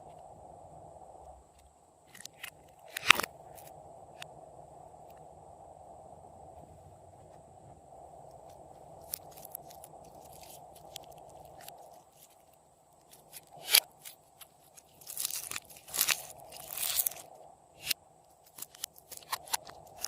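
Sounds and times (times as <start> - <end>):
slime crunching: 9.0 - 20.0
slime crackling and clicking: 14.8 - 20.0.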